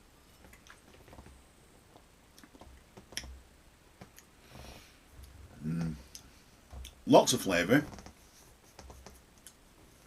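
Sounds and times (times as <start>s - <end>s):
soft hiss: 0.0s - 10.0s
faint clicks and taps: 0.3s - 3.4s, 5.2s - 7.0s, 7.8s - 9.6s.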